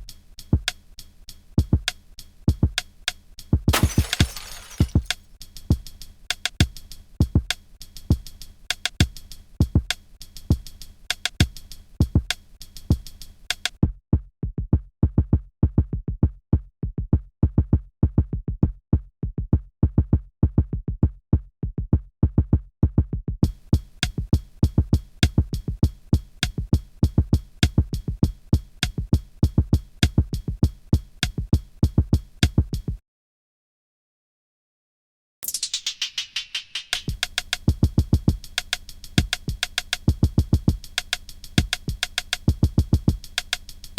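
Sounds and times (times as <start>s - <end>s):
drum machine beat: 7.2s - 33.0s, 37.0s - 43.8s.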